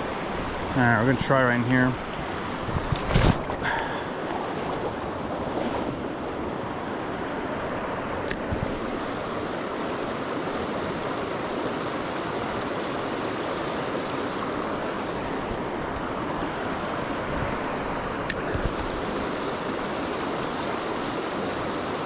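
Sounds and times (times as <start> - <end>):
creek water rushing: 0.0 - 22.0.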